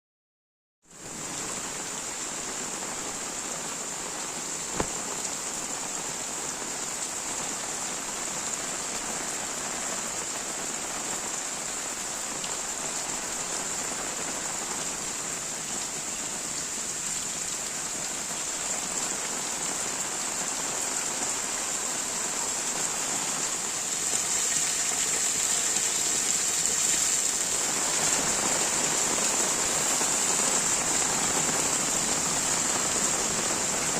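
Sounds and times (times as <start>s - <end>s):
heavy rain falling: 1.0s - 33.9s
sharp tap: 4.8s - 5.0s.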